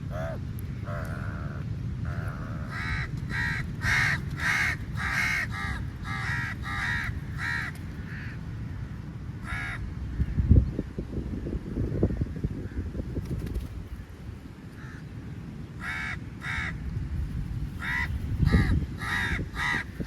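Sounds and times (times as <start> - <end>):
crow cawing: 0.0 - 8.4, 9.4 - 9.8, 14.8 - 15.1, 15.8 - 16.8, 17.8 - 20.0.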